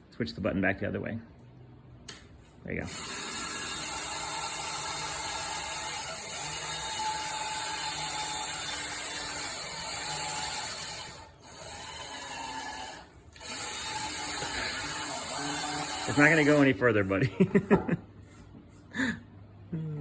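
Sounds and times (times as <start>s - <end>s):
power drill running: 2.8s - 16.8s.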